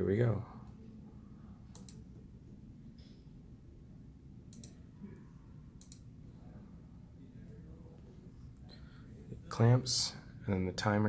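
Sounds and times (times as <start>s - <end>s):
low room hum: 0.0s - 11.0s
faint sharp clicks: 5.8s - 6.1s.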